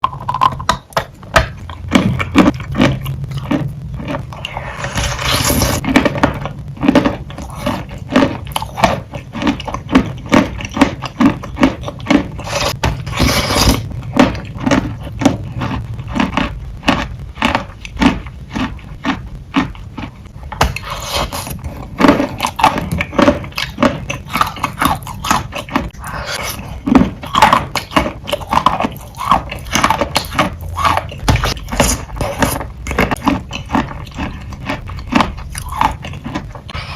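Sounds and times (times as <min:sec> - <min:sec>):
chewing crunches: 0:00.0 - 0:36.9
gritty scraping: 0:00.9 - 0:19.0.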